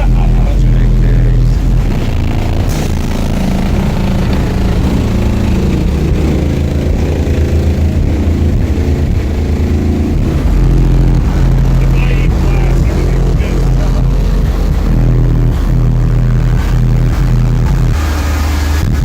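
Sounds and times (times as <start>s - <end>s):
loud bass-heavy music: 0.0s - 19.0s.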